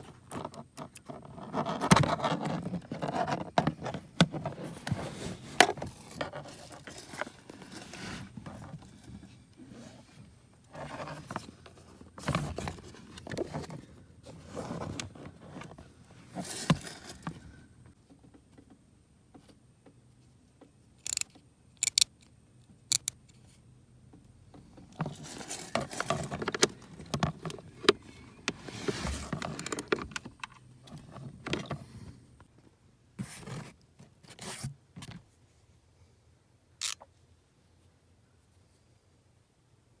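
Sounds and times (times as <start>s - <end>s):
scraping and rustling: 0.0s - 17.7s, 24.6s - 32.2s.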